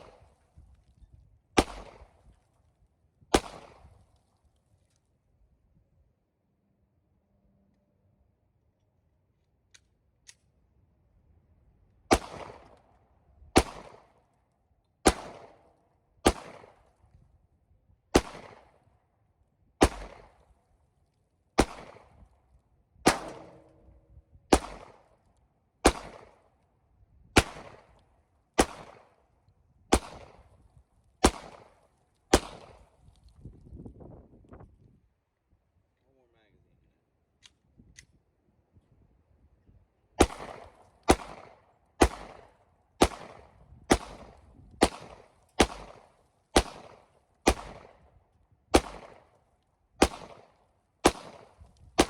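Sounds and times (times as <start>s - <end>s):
gunshots with echo: 19.8s - 20.4s, 21.6s - 22.1s, 23.0s - 25.1s, 25.8s - 26.4s, 40.2s - 48.0s, 48.8s - 49.2s, 51.0s - 52.0s.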